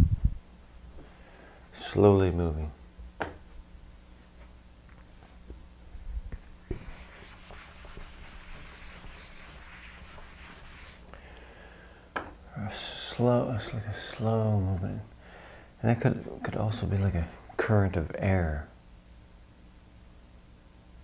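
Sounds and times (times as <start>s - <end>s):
pen scratching on paper: 6.6s - 11.0s.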